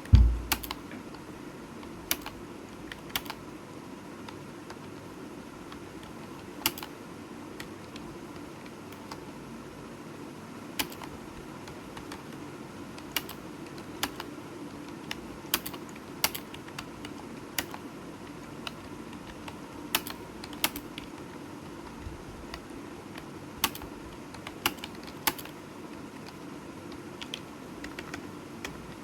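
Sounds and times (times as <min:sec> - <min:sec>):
keyboard key clicks: 0:00.0 - 0:00.8
steady background hiss: 0:00.0 - 0:29.0.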